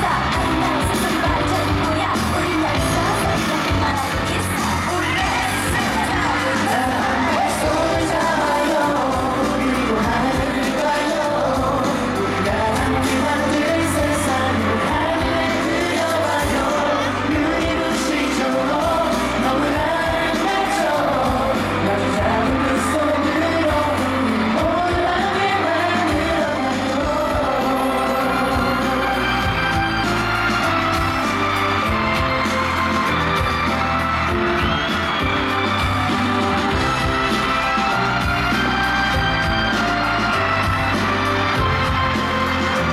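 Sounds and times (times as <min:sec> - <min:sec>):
person singing live: 0:00.0 - 0:42.9
pop song beat and bass: 0:00.0 - 0:42.9.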